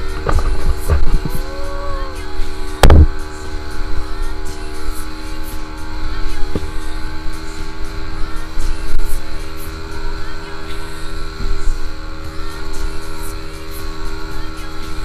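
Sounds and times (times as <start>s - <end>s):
motorboat engine running: 0.0s - 15.0s
loud thump: 2.8s - 3.1s.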